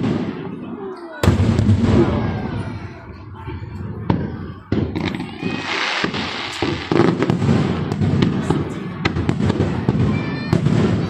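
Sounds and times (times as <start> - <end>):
fireworks bangs and pops: 0.0 - 11.0
hissing crackle: 5.0 - 7.2.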